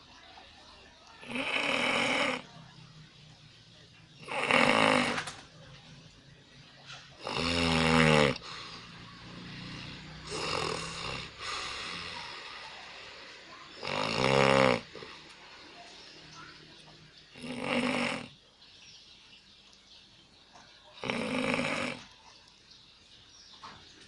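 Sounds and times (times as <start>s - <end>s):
person snoring: 1.2s - 2.4s, 4.2s - 5.2s, 7.2s - 12.6s, 13.8s - 15.2s, 17.4s - 18.3s, 21.0s - 22.0s.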